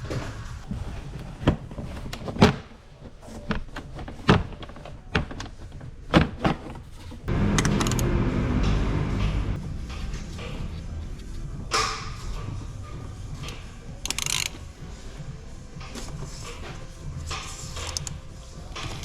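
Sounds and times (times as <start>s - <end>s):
steady sound with low hum: 7.2s - 19.0s.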